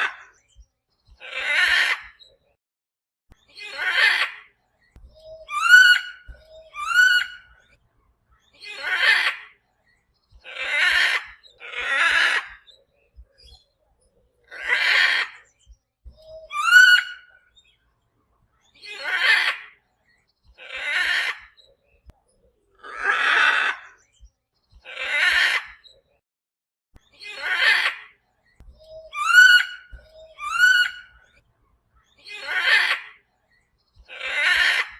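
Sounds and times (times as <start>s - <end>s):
parrot squawking: 3.6s - 4.4s, 8.7s - 9.5s, 10.4s - 12.5s, 14.6s - 15.4s, 16.5s - 17.3s, 18.9s - 19.7s, 20.6s - 21.5s, 27.3s - 28.1s, 29.1s - 31.1s, 32.3s - 33.1s, 34.1s - 34.9s.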